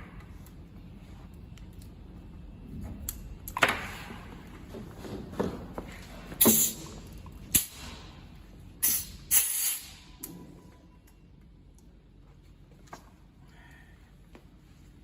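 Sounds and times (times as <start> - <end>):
compressed air hissing: 6.4 - 6.9, 8.8 - 10.0.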